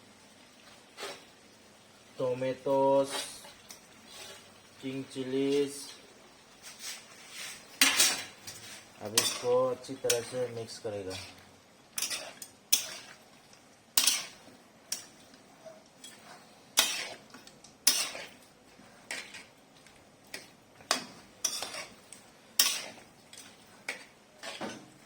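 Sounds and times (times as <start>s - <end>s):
utensil clanking and scraping a pot: 6.7s - 13.3s, 14.0s - 19.6s, 20.3s - 25.0s.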